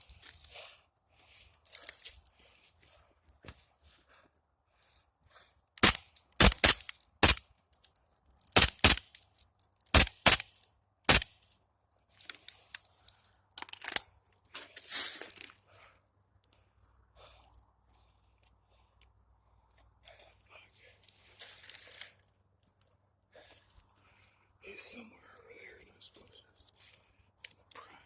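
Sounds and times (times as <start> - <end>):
airsoft gun shots: 5.8 - 7.4, 8.6 - 9.0, 9.9 - 10.5, 11.1 - 11.4.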